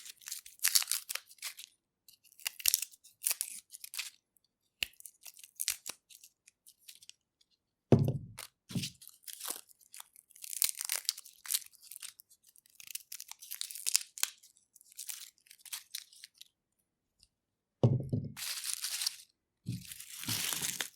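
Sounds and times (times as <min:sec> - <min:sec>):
garlic skins crackling: 0:00.2 - 0:01.7, 0:10.4 - 0:12.1, 0:12.8 - 0:16.4, 0:18.4 - 0:20.9
sharp thump: 0:17.8 - 0:18.4.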